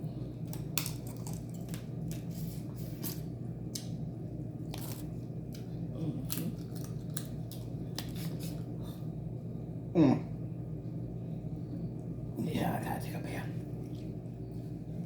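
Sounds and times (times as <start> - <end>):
crab shells cracking: 0.4 - 2.3, 4.8 - 8.6.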